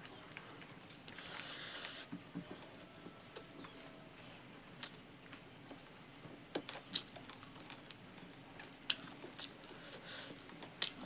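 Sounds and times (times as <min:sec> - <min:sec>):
quiet chewing: 0:06.7 - 0:11.0.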